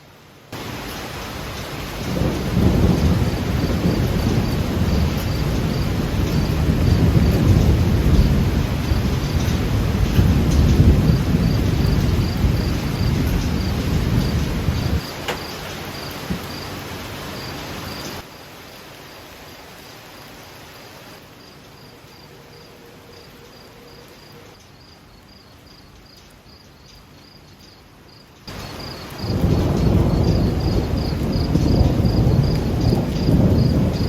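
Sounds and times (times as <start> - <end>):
rain hissing: 0.0 - 34.0
low thunder rumble: 0.6 - 16.6, 28.5 - 34.0
crickets chirping: 0.6 - 34.0.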